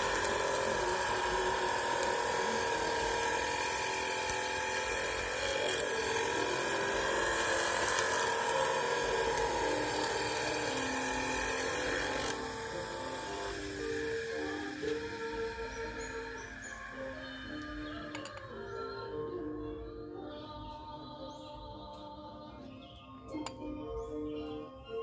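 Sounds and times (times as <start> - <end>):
power tool motor whining: 0.0 - 20.0
music: 0.0 - 25.0.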